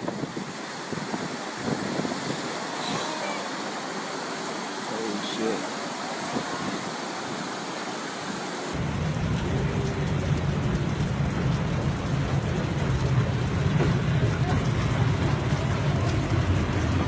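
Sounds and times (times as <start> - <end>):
heavy rain pouring: 0.0 - 17.0
steady rushing noise: 0.0 - 17.0
deep rumble: 8.8 - 17.0.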